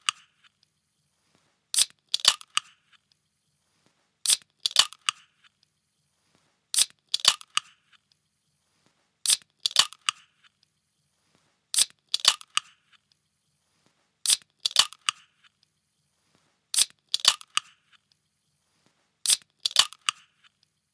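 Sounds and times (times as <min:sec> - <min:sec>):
metal can opening click and hiss: 0:01.8 - 0:02.7, 0:04.3 - 0:05.2, 0:06.8 - 0:07.7, 0:09.3 - 0:10.2, 0:11.8 - 0:12.7, 0:14.3 - 0:15.2, 0:16.8 - 0:17.7, 0:19.3 - 0:20.3.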